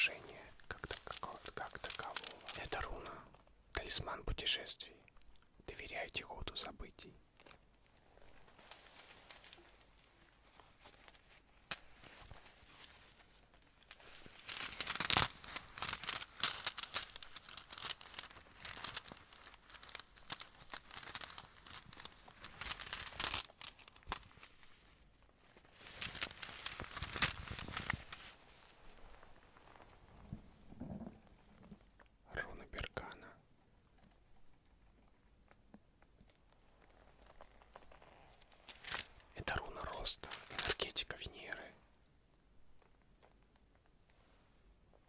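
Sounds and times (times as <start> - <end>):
crinkling from handling: 0.0 - 3.5, 7.4 - 32.1, 34.0 - 41.2.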